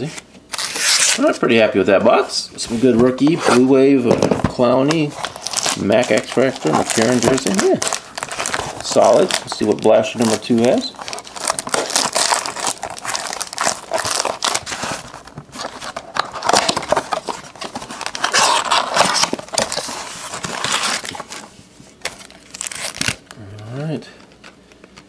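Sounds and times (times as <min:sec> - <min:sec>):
plastic shrink wrap crinkling: 0:04.2 - 0:23.4.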